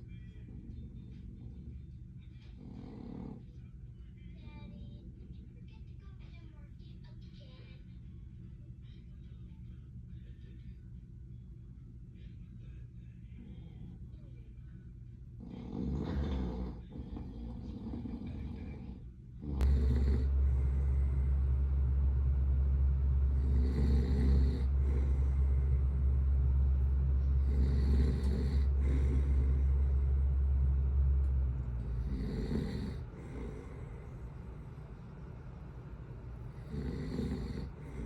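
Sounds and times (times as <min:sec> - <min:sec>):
loud steady low rumble: 0:00.0 - 0:38.0
man snoring: 0:02.6 - 0:03.4, 0:15.4 - 0:21.6, 0:23.2 - 0:30.1, 0:31.8 - 0:34.3, 0:36.5 - 0:38.0.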